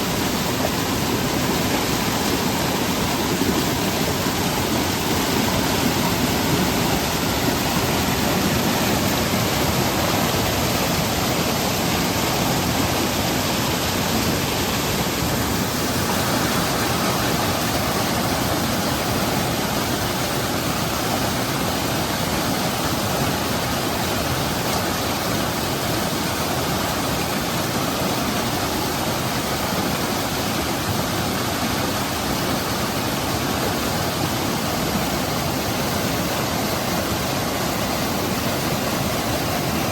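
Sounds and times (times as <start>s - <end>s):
stream rushing over rocks: 0.0s - 39.9s.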